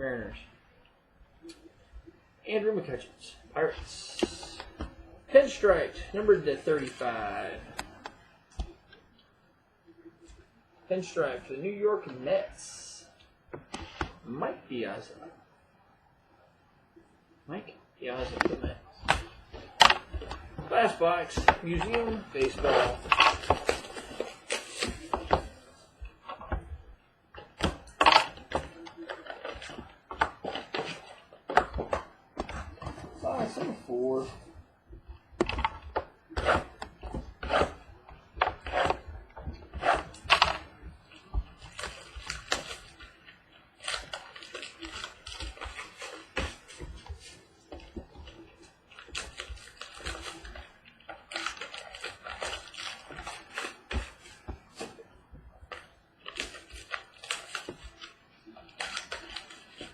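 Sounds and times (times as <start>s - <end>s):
packaging rustle: 18.3s - 34.5s, 35.2s - 59.9s.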